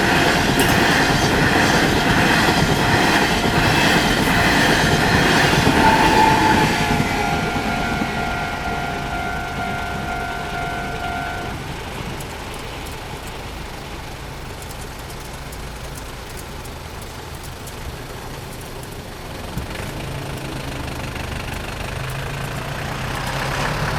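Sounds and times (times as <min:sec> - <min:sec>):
level crossing warning tone: 0:00.0 - 0:14.6
vehicle engines idling: 0:00.0 - 0:23.9.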